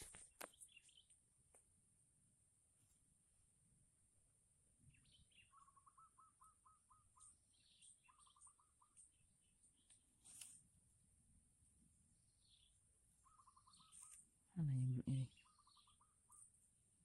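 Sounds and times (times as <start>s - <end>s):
bird calls: 4.8s - 10.5s, 12.3s - 16.7s.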